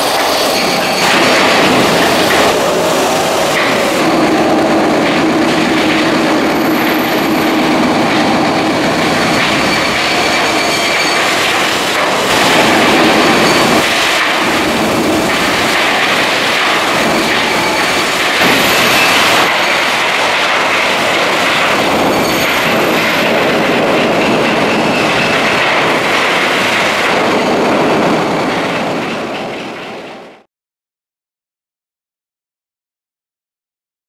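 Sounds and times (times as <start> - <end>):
demolition machinery breaking concrete: 0.1 - 30.4.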